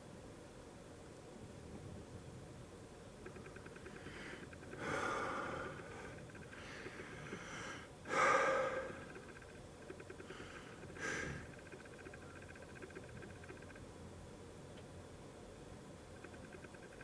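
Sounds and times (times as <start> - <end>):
person breathing out heavily: 4.0 - 9.4, 10.2 - 11.6.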